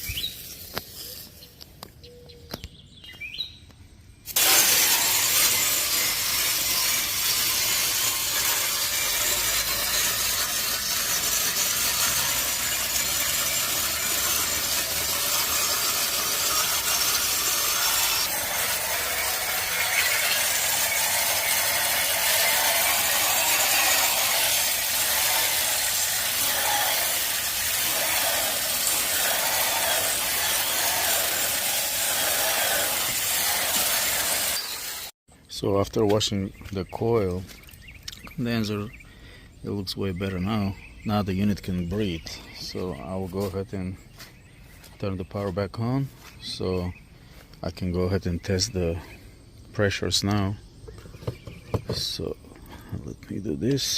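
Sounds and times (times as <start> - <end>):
hose spraying water: 4.3 - 35.2.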